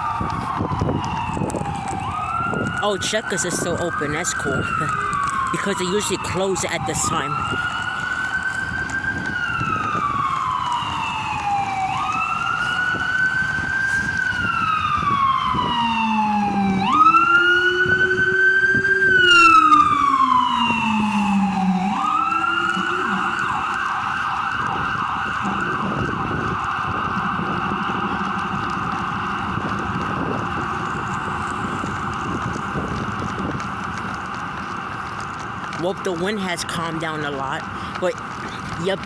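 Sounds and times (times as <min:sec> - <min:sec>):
emergency siren wailing: 0:00.0 - 0:39.0
lower siren tone: 0:00.0 - 0:39.0.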